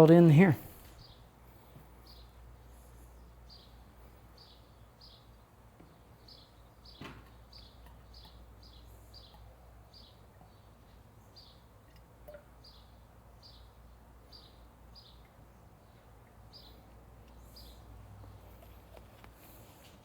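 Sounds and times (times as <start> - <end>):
steady low hum: 0.0 - 6.7.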